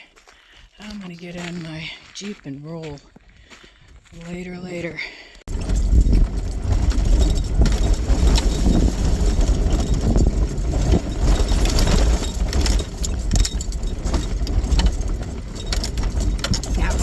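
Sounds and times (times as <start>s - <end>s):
off-road vehicle engine rumble: 5.4s - 17.0s
vehicle rattles and knocks: 5.5s - 17.0s.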